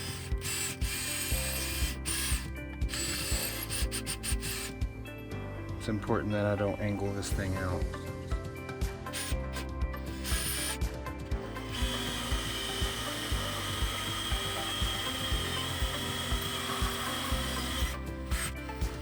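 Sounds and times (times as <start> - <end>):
power drill boring through steel: 0.0 - 4.9, 9.1 - 19.0.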